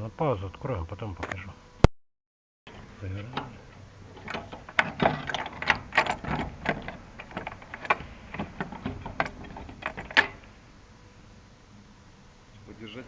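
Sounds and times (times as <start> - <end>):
tools and parts clicking and knocking: 4.2 - 10.5.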